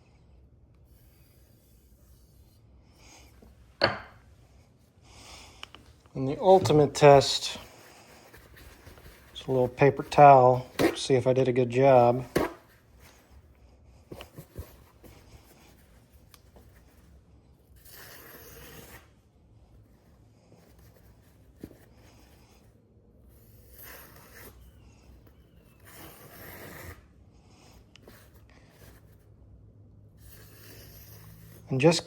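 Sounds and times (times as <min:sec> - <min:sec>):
knife slicing paper towel: 0:06.2 - 0:11.4, 0:12.0 - 0:13.2.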